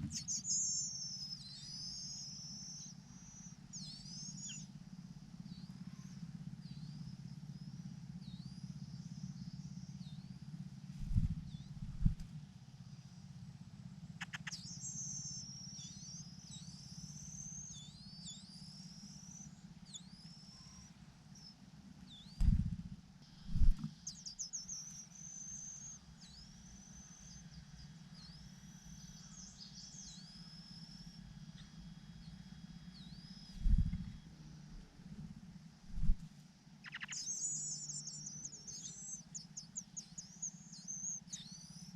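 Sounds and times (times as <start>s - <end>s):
small birds chirping: 0.0s - 13.3s, 14.1s - 41.9s
steady low hum: 0.0s - 41.9s
dull low thumps: 11.0s - 12.3s, 22.4s - 23.9s, 33.6s - 34.2s, 35.9s - 36.3s.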